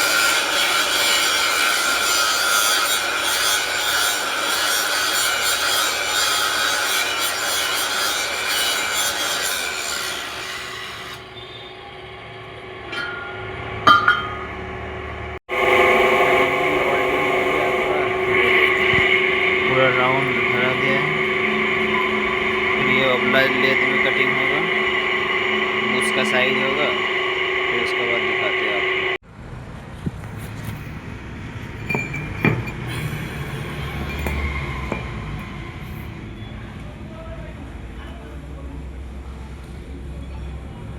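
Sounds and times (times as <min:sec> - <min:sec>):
tool rasping metal: 0:00.0 - 0:11.6, 0:15.5 - 0:29.2
machine humming: 0:00.0 - 0:29.2
sharp metallic clanks: 0:12.9 - 0:14.7.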